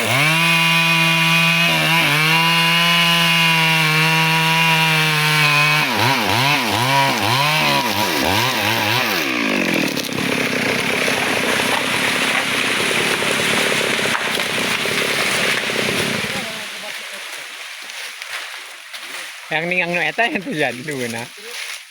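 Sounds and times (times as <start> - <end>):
chainsaw cutting wood: 0.0 - 17.1.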